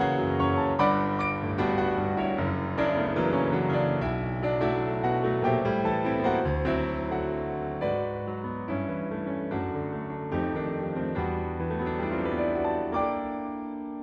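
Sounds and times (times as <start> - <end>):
slow piano chords with melody: 0.0 - 14.0.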